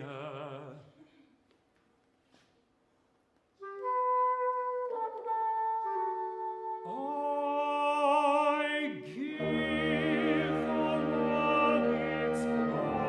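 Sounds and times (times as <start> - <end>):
wind instruments holding notes: 3.6 - 7.3, 9.1 - 13.0.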